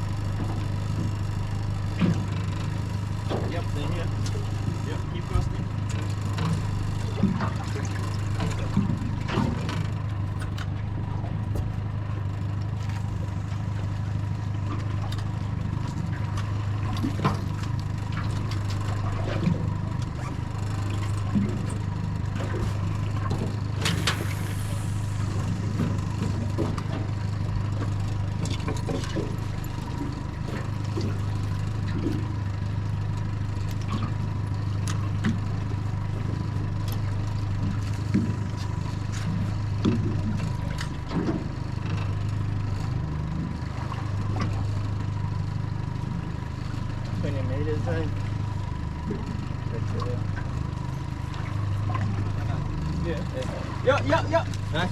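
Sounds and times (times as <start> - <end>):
outboard motor idling: 0.0 - 54.9
brief sharp hiss: 23.8 - 25.6.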